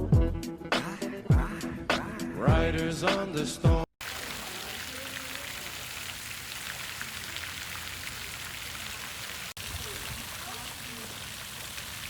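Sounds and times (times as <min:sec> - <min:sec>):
patter of raindrops: 0:04.0 - 0:12.0
steady rain: 0:04.0 - 0:12.0.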